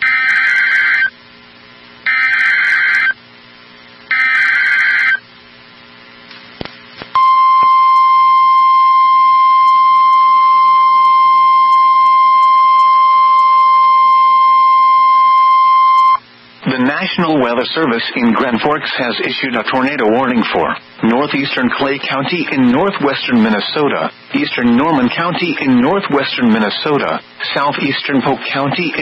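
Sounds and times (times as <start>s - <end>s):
steady warning alarm tone: 0.0s - 1.2s, 2.0s - 3.2s, 4.1s - 5.2s.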